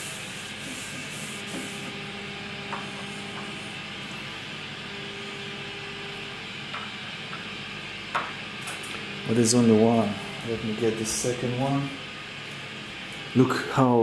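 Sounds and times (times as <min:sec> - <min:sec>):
background hum and hiss: 0:00.0 - 0:14.0.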